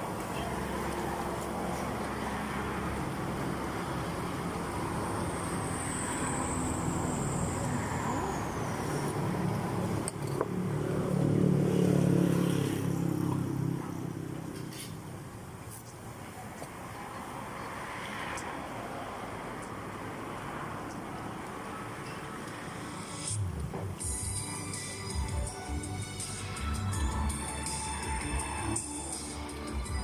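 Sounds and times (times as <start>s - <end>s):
vehicle engine and road rumble: 0.0s - 30.0s.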